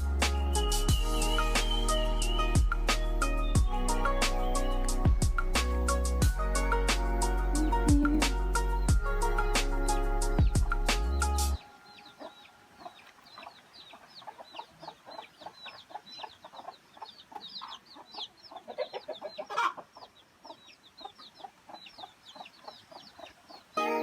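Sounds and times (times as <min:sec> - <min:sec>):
chickens clucking: 0:07.5 - 0:09.5, 0:12.0 - 0:23.8.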